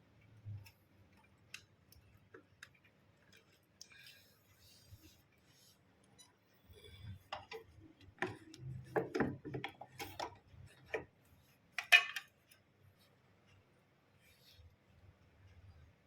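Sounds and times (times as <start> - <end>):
hard objects clicking and knocking: 7.3 - 11.2.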